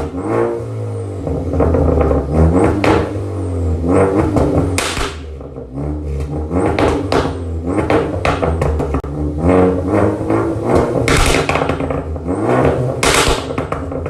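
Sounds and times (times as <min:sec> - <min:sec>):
car engine revving: 0:00.0 - 0:14.0
exhaust crackles and pops: 0:01.2 - 0:03.3, 0:03.9 - 0:09.2, 0:10.6 - 0:14.0.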